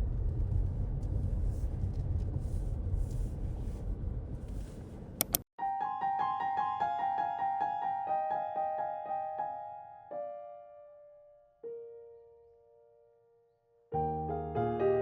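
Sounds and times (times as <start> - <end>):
soft solo piano: 5.7 - 10.6, 14.0 - 15.0.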